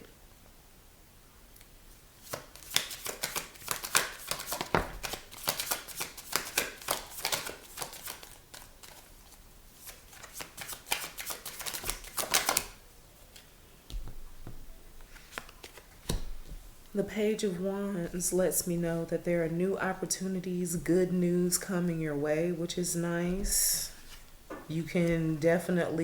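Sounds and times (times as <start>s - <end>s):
cards being shuffled: 2.2s - 13.5s, 15.1s - 16.3s.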